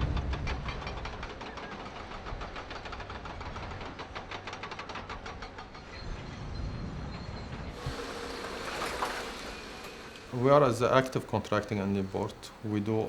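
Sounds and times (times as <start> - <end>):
rapid metallic clatter: 0.0 - 6.6
construction machinery engine: 0.0 - 13.0.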